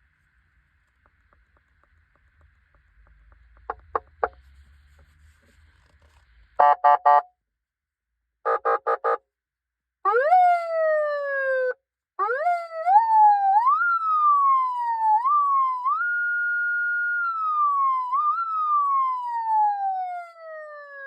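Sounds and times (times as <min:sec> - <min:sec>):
siren wail: 0:10.1 - 0:21.0.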